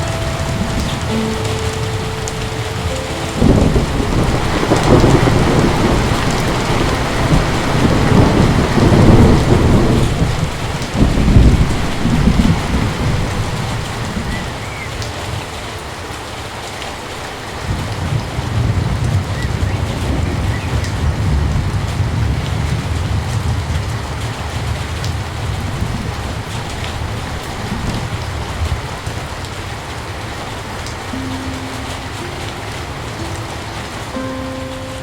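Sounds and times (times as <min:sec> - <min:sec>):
rolling thunder: 0:00.0 - 0:14.9, 0:17.6 - 0:29.4
heavy rain falling: 0:00.0 - 0:35.0.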